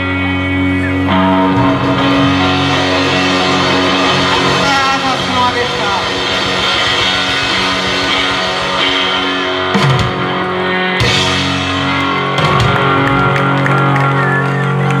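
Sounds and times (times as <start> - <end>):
electric guitar: 0.0 - 15.0
drum hits: 1.6 - 13.7.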